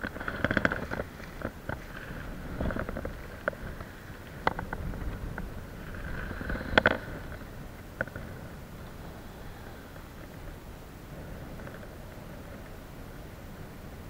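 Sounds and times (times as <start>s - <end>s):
sharp clicks and knocks: 0.0s - 8.4s
wind buffeting microphone: 0.0s - 14.0s.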